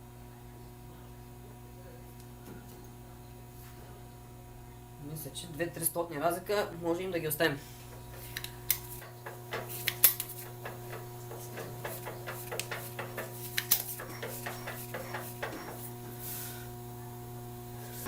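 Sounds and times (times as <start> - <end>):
mechanical hum with tones: 0.0 - 18.0
sharp clicks and ticks: 8.0 - 15.6.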